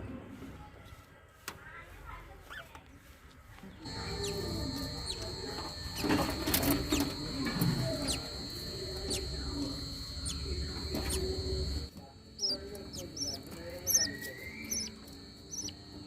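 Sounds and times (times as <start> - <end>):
high-pitched whine: 3.8 - 16.0
lovebirds chirping: 3.8 - 16.0.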